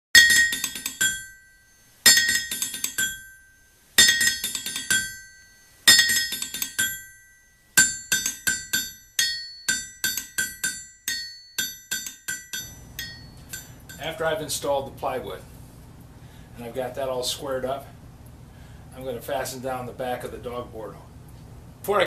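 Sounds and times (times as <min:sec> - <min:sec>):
ringing metallic percussion music: 0:00.2 - 0:14.1.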